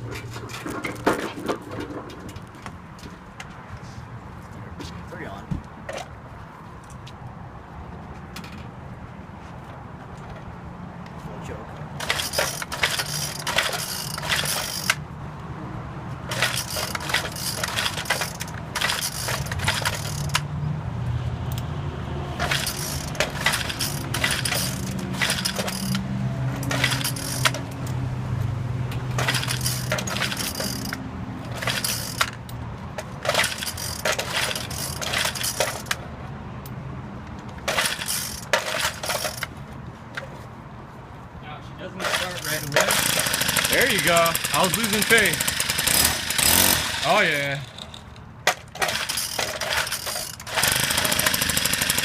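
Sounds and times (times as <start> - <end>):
recoil starter pulls: 12.0 - 15.0, 16.3 - 20.5, 22.4 - 26.0, 26.6 - 27.7, 29.2 - 32.4, 33.2 - 36.0, 37.6 - 39.5, 42.0 - 52.0.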